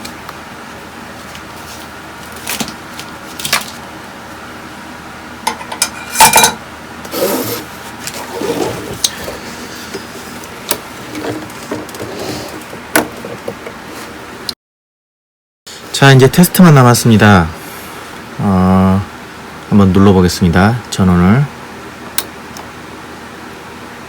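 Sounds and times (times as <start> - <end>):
metal tools clattering: 5.5 - 6.6.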